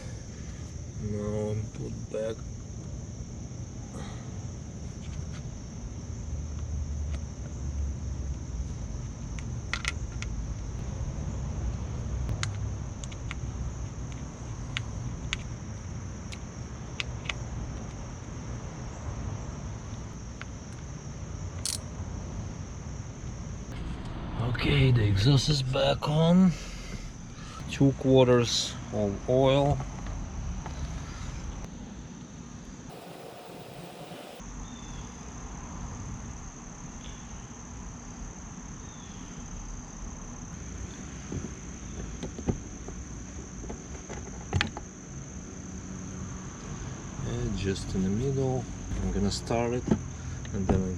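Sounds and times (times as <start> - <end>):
steady low rumble: 23.7 - 26.1
constant high whine: 32.6 - 34.6
high-pitched insect trill: 32.9 - 40.6.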